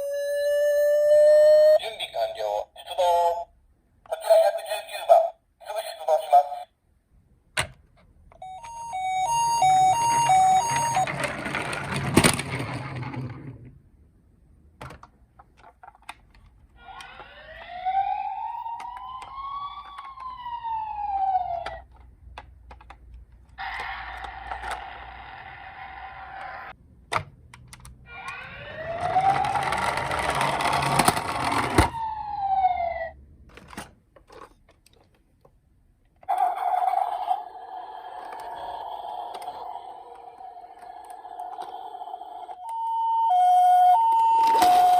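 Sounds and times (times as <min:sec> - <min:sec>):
buzzing siren tone: 0:00.0 - 0:01.8, 0:08.4 - 0:11.2, 0:17.2 - 0:21.7, 0:28.2 - 0:30.0, 0:36.3 - 0:44.9
toy two-tone ambulance siren: 0:00.0 - 0:01.8, 0:08.4 - 0:11.4, 0:16.8 - 0:21.9, 0:28.1 - 0:33.2, 0:36.3 - 0:44.9
toy wail siren: 0:00.0 - 0:01.8, 0:08.4 - 0:11.3, 0:16.8 - 0:21.9, 0:28.1 - 0:33.2, 0:36.3 - 0:44.9
clattering noise: 0:10.0 - 0:13.8, 0:28.2 - 0:32.0.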